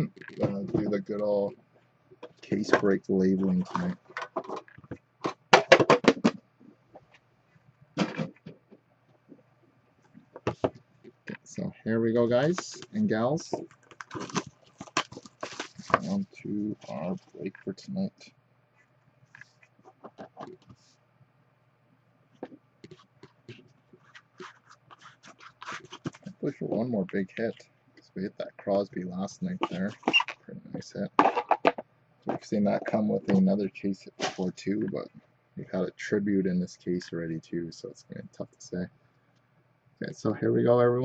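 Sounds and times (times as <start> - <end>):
card packaging crinkling and tapping: 12.5 - 16.2, 22.4 - 26.8.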